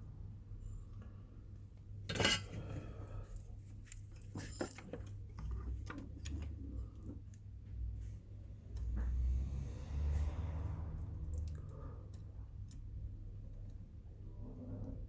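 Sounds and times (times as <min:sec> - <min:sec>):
tools clattering: 0:02.1 - 0:02.6.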